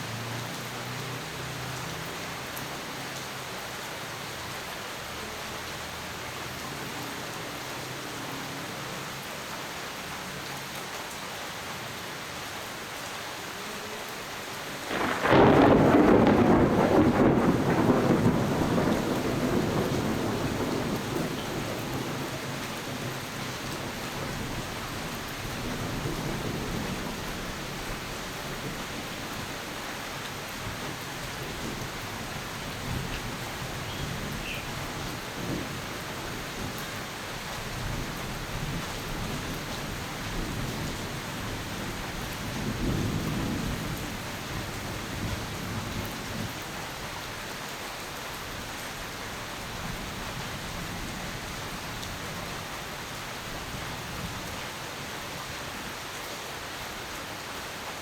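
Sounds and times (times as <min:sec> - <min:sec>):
steady rain falling: 0:00.0 - 0:58.0
thunder clap and rumble: 0:14.9 - 0:28.0.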